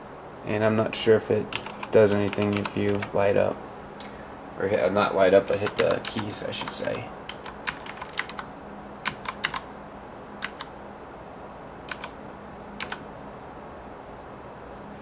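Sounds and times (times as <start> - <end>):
mechanical keyboard key clicks: 9.1 - 9.6, 11.9 - 12.1, 12.8 - 13.0.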